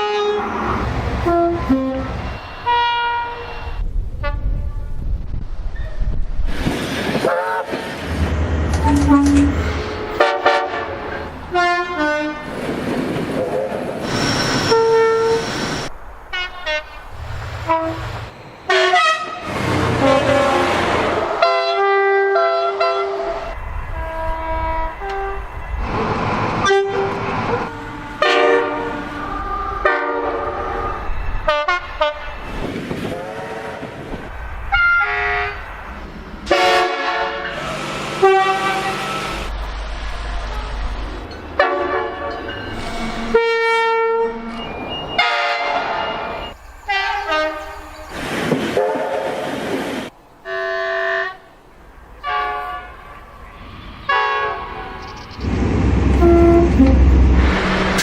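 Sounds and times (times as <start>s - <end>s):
train horn blasts: 0.0s - 0.6s, 1.2s - 5.0s, 7.2s - 8.0s, 8.7s - 12.6s, 14.6s - 15.4s, 17.6s - 32.4s, 34.7s - 35.7s, 36.4s - 39.5s, 41.6s - 46.2s, 46.9s - 47.8s, 50.4s - 51.5s, 52.2s - 53.3s, 54.1s - 55.1s, 56.1s - 58.0s
rumble of passing trains: 0.0s - 58.0s.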